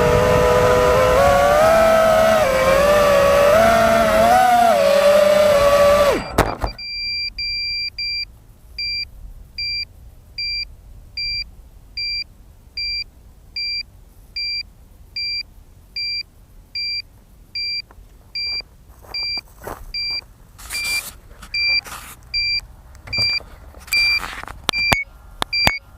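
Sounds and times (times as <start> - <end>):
drone motors whining: 0.0 - 7.0
short high beeps: 6.2 - 9.8, 19.2 - 19.4, 20.0 - 23.4, 24.0 - 25.8.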